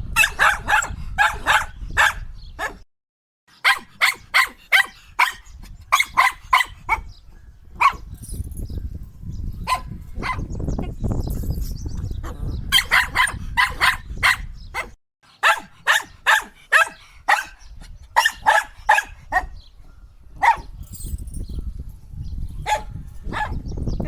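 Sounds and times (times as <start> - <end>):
dog barking high: 0.1 - 2.8, 3.6 - 7.1, 7.8 - 8.1, 9.6 - 10.5, 12.2 - 19.6, 20.4 - 20.8, 22.6 - 23.7.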